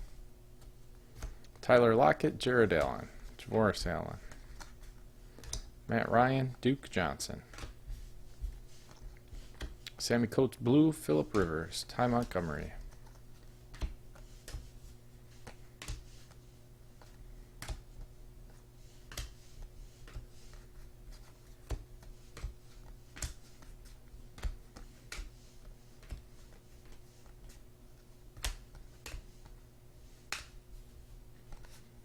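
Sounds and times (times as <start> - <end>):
low electrical hum: 0.0 - 32.0
trading cards clicking and tapping: 2.7 - 5.7, 7.4 - 7.8, 11.1 - 14.7, 20.0 - 25.3, 30.2 - 30.6.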